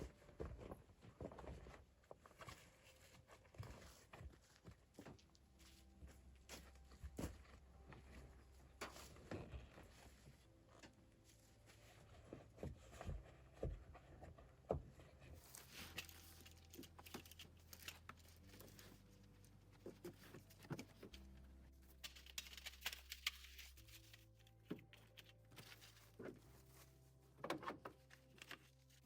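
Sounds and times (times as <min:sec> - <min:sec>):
soft background music: 0:00.0 - 0:29.0.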